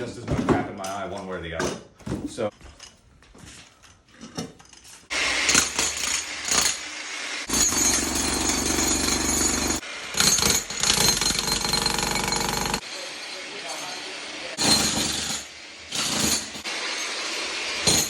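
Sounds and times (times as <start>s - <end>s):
jackhammer breaking floor: 5.1s - 6.9s, 7.5s - 12.8s, 14.6s - 18.0s.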